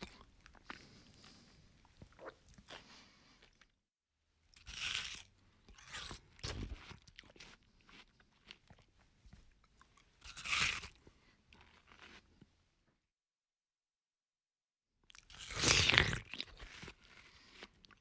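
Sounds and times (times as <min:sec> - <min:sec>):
crunchy chewing: 0:04.5 - 0:09.0, 0:09.9 - 0:12.5, 0:15.1 - 0:18.0
loud crunching bites: 0:04.6 - 0:07.4, 0:10.3 - 0:11.0, 0:15.3 - 0:17.7.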